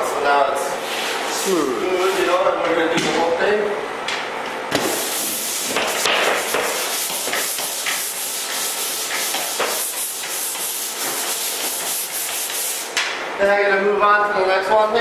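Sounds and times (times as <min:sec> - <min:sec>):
pole sander rubbing drywall: 0:04.9 - 0:12.9.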